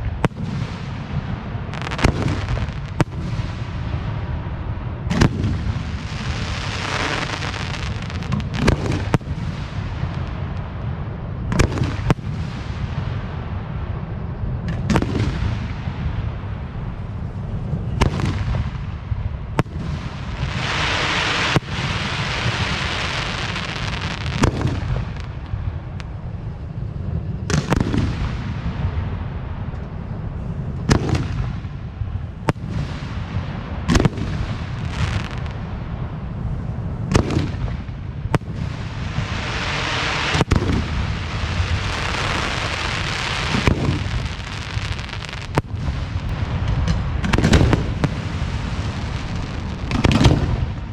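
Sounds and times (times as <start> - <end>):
firework shells booming: 0.0 - 4.3, 5.1 - 10.8, 17.8 - 26.2, 37.1 - 50.9
firework crackling: 0.0 - 13.6, 14.8 - 29.7, 30.8 - 50.9
low rumble: 0.0 - 50.9.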